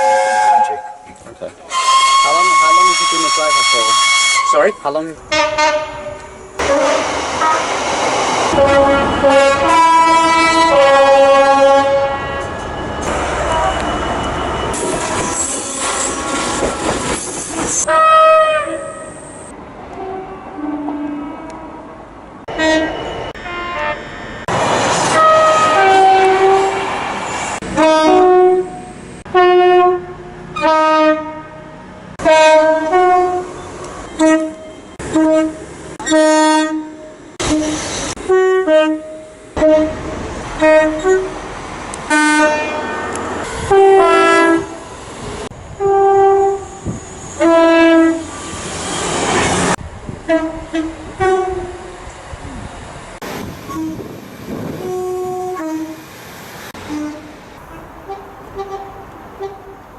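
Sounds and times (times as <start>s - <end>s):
train two-tone horn blasts: 0.0s - 1.1s, 1.7s - 7.7s, 8.5s - 12.6s, 17.8s - 19.2s, 19.9s - 21.8s, 22.5s - 24.1s, 25.1s - 26.9s, 27.6s - 41.4s, 42.1s - 44.8s, 45.8s - 48.3s, 50.2s - 52.0s, 53.7s - 54.1s, 54.7s - 56.0s, 56.8s - 59.8s
passing trains rushing: 0.0s - 59.9s.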